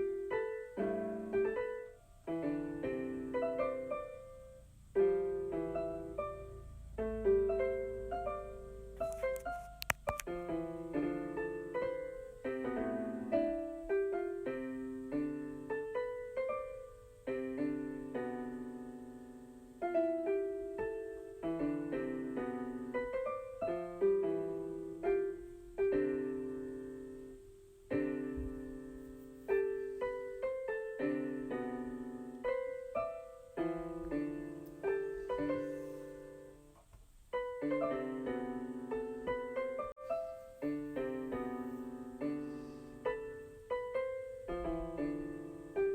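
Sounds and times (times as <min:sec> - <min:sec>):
piano melody and chords: 0:00.0 - 0:45.9.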